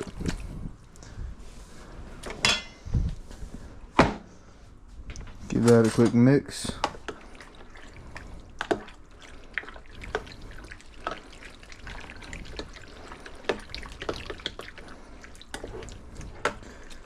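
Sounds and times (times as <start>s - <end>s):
wet clicks and drips: 6.8s - 17.0s.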